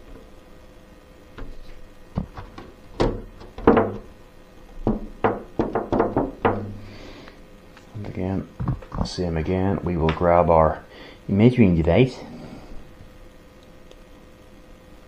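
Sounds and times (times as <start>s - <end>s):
plastic car body knocks and thunks: 2.2s - 4.1s, 4.8s - 6.8s.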